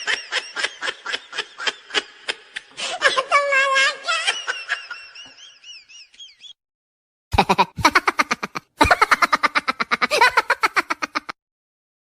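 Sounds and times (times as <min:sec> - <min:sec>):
fast stuttering laughter: 0:07.4 - 0:11.4.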